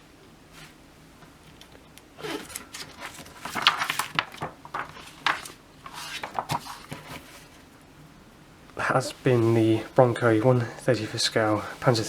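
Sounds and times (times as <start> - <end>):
packaging rustling and scraping: 1.6 - 7.7.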